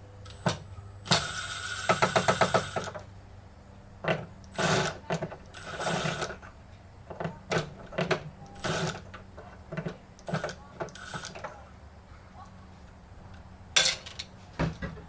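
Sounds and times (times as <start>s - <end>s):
rattling bursts: 4.5s - 6.5s, 7.1s - 11.6s.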